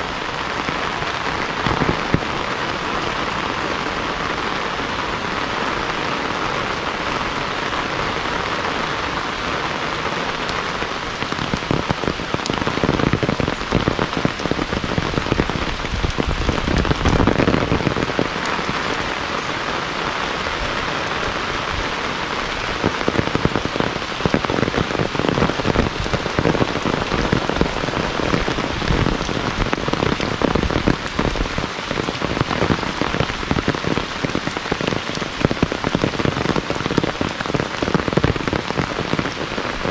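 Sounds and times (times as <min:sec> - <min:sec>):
heavy rain falling: 0:00.0 - 0:39.9
wind rumble on microphone: 0:09.2 - 0:39.9.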